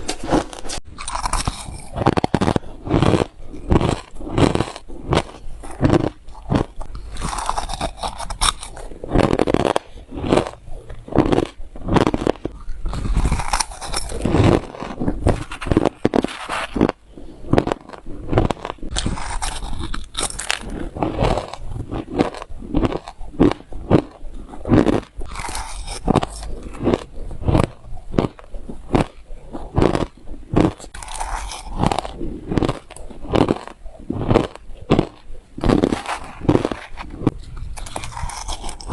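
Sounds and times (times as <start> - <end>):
chewing crunchy ice: 0.1 - 38.9.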